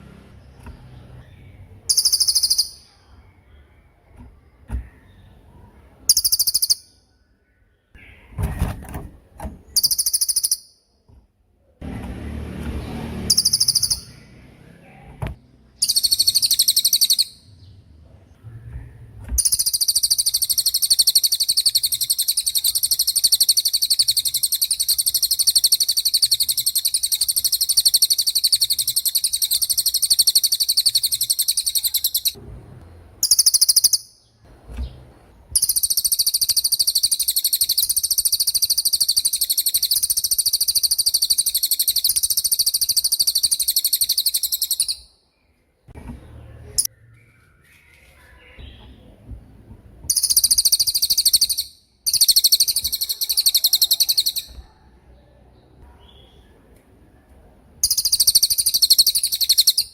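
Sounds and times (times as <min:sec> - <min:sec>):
bird singing fast high trills: 0:01.2 - 0:03.0, 0:13.2 - 0:14.4, 0:15.8 - 0:17.5.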